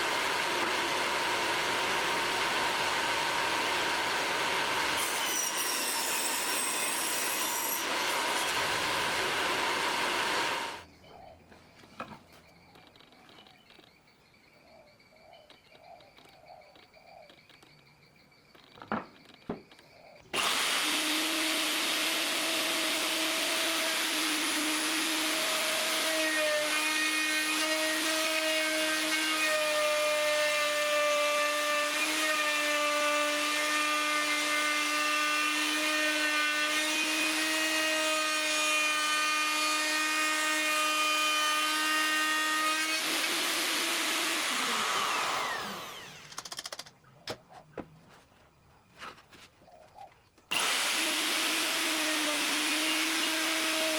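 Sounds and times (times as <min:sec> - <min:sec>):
power tool motor humming: 0:00.0 - 0:10.8, 0:20.4 - 0:46.8, 0:50.5 - 0:53.9
sharp clicks: 0:46.0 - 0:47.5.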